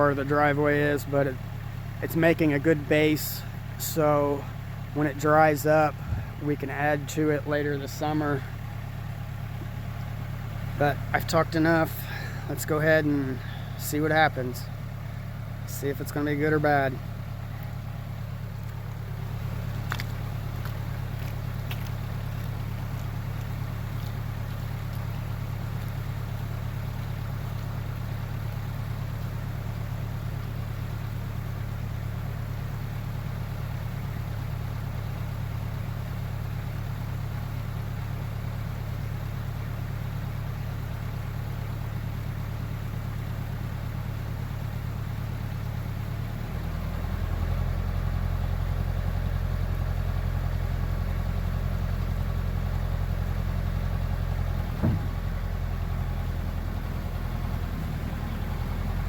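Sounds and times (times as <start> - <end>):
heavy equipment engine running: 0.0 - 59.0
short knock: 54.8 - 55.2.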